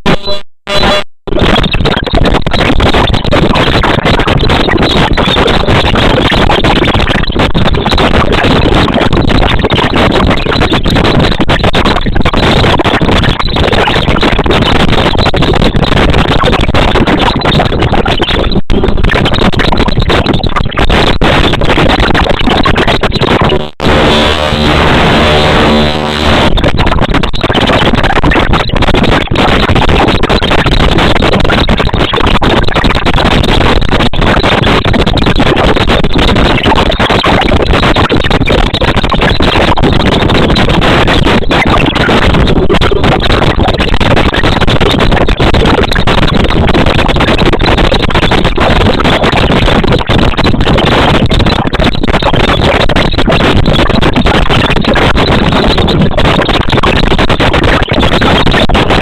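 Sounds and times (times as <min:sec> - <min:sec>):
loud dense music: 0:23.6 - 0:26.5.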